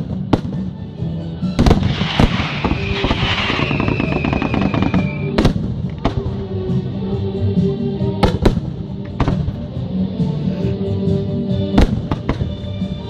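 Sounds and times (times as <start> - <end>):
falling whistle of firework: 1.6 - 5.4
fireworks shells bursting: 1.6 - 6.0
fireworks crackling: 1.6 - 6.4.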